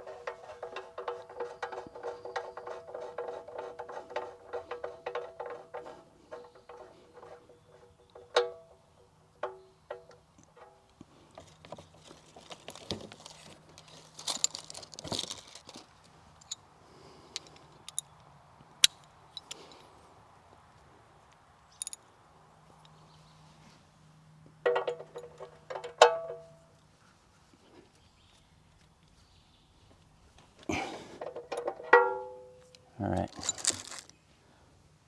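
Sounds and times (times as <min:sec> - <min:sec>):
metallic clicks and knocks: 0:00.0 - 0:10.9, 0:24.6 - 0:26.5, 0:31.2 - 0:32.7
brief rustling: 0:33.2 - 0:34.2.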